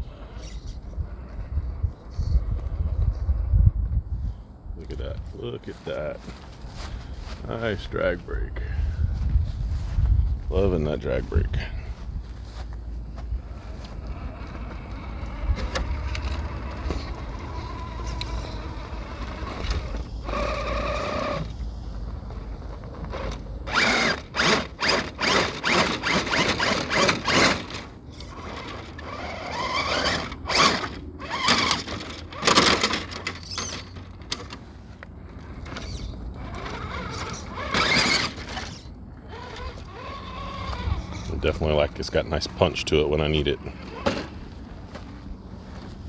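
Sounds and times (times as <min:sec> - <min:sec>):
gears and tyres clattering on rock: 0:05.2 - 0:46.0
electric motor whirring: 0:12.4 - 0:46.0.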